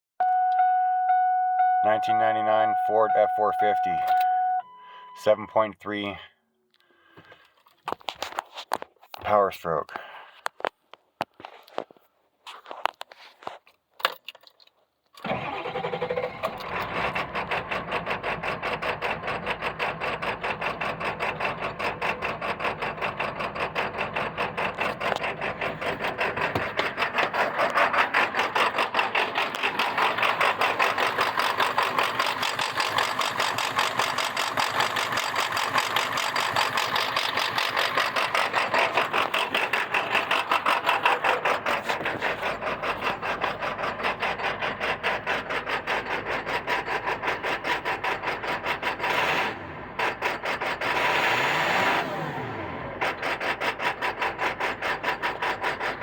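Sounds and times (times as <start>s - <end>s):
diesel engine starting and idling: 0.2s - 6.3s, 15.2s - 56.0s.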